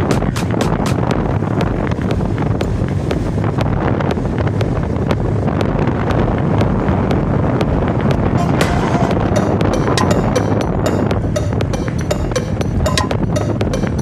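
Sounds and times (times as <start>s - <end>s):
wind buffeting microphone: 0.0s - 14.0s
sharp ticks: 8.1s - 14.0s.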